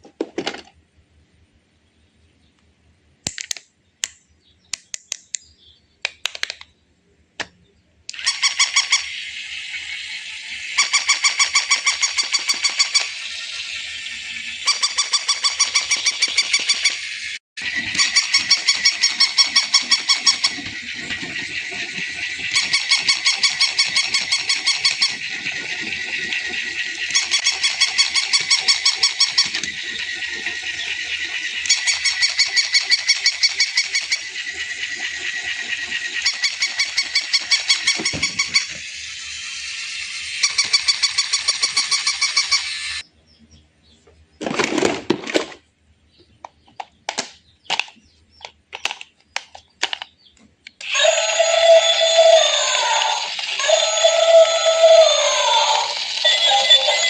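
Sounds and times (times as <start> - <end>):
electronic toy sound effect: 8.1 - 43.0, 50.8 - 57.0.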